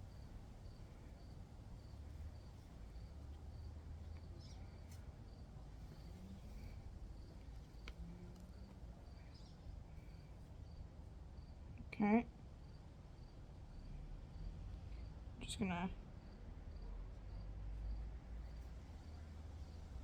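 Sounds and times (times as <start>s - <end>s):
cricket chirping: 0.0s - 11.6s, 12.6s - 15.2s, 16.2s - 20.0s.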